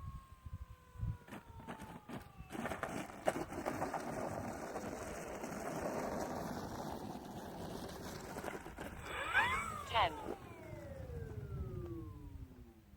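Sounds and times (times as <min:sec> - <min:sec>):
wind on microphone: 0:08.8 - 0:12.7.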